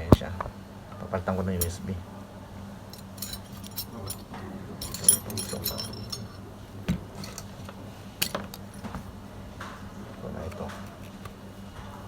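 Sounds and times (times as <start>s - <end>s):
low electrical hum: 0.0s - 12.0s
metal tools clinking on surface: 1.5s - 1.8s, 2.9s - 6.4s, 7.1s - 9.0s.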